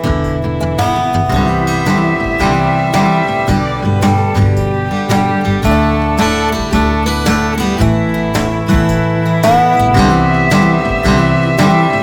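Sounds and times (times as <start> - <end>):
plucked guitar music with beat: 0.0 - 12.0.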